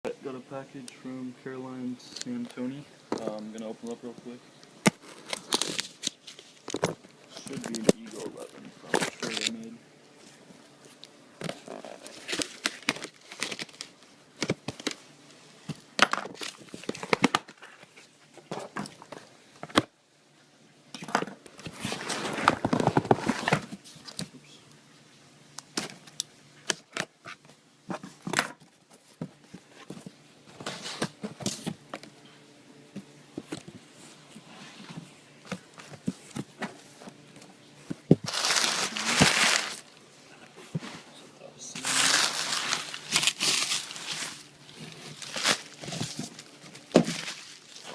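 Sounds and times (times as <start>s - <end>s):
packaging tearing and crinkling: 4.8s - 6.8s, 8.9s - 9.6s, 11.6s - 15.0s, 38.2s - 39.9s, 41.8s - 47.9s
rustling: 21.5s - 24.6s, 33.0s - 47.9s.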